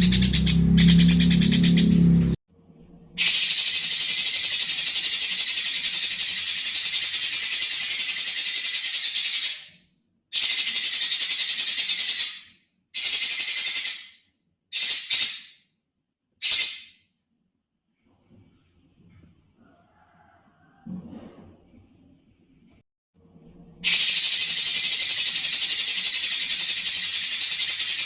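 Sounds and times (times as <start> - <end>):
bird rasping trill: 0.0 - 2.4.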